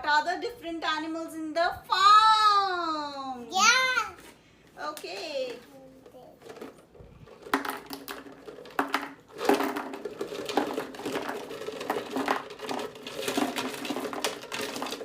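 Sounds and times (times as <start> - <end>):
plastic toys clattering in bucket: 6.3 - 15.0.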